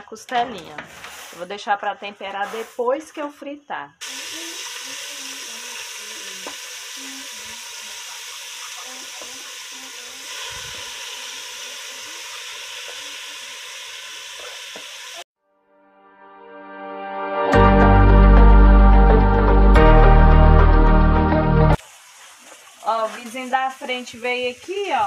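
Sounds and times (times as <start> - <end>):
ribs sizzling in oil: 4.0 - 15.3, 21.8 - 25.0
music: 15.4 - 21.8.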